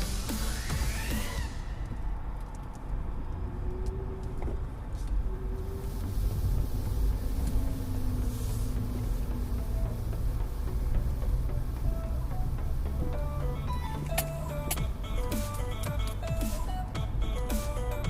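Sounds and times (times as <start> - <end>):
vehicle driving off-road rumble: 0.0 - 18.0.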